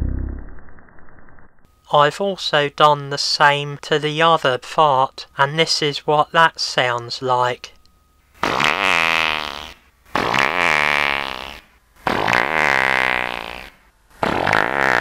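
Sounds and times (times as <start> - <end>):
slowed low fart blasts: 8.4 - 15.0.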